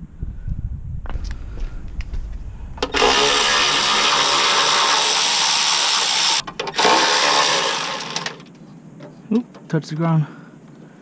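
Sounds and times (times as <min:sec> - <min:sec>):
power tool whirring: 0:02.8 - 0:08.5.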